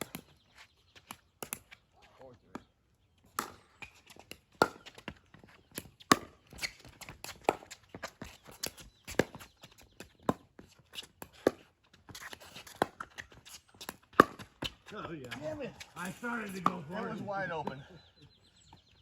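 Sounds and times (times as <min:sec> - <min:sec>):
footsteps on court: 0:03.8 - 0:18.0
paddles striking plastic ball: 0:13.8 - 0:15.4.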